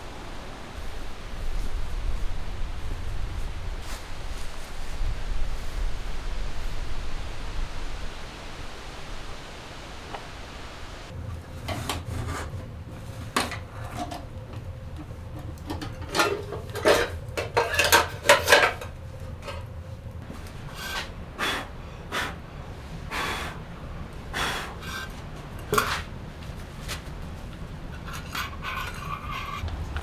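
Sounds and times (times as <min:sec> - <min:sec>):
objects scraping and knocking: 0:11.5 - 0:21.2, 0:24.8 - 0:30.0.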